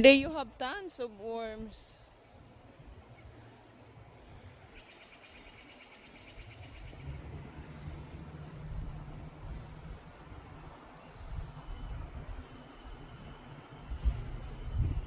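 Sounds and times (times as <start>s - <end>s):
low rumble: 6.4s - 15.0s.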